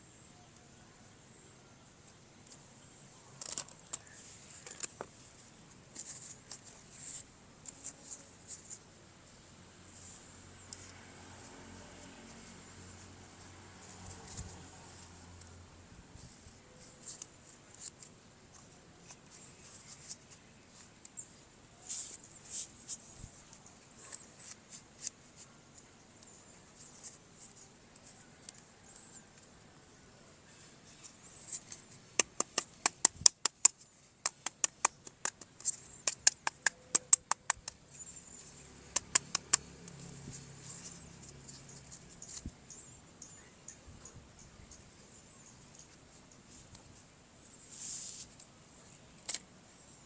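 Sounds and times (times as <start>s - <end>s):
rapid sharp clicks: 31.7s - 37.9s, 38.8s - 40.0s.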